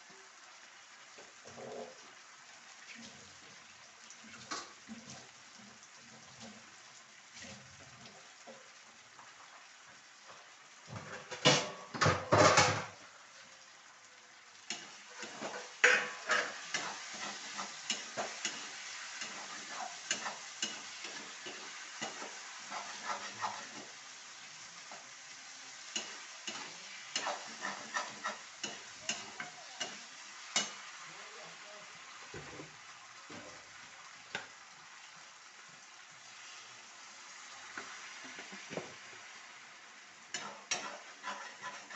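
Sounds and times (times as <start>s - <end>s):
food sizzling: 0.0s - 41.9s
metal spoon scraping a pan: 14.7s - 24.0s, 25.8s - 30.8s, 40.3s - 41.9s.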